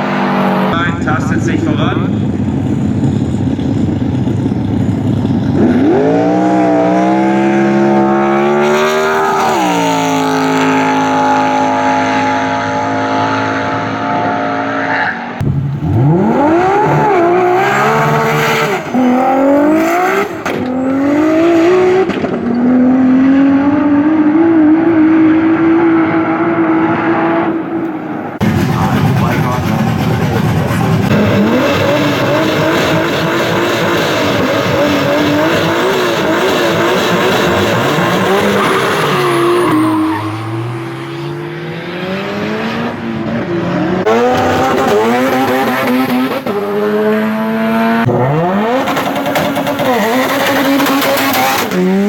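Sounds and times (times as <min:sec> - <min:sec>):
racing car engine revving: 0:00.0 - 0:52.0.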